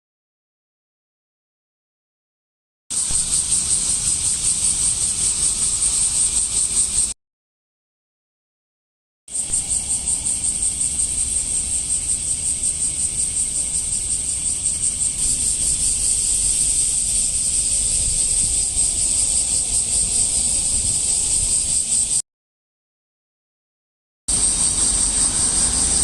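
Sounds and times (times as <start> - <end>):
cicada buzzing: 2.9 - 7.2, 9.3 - 22.2, 24.3 - 26.0.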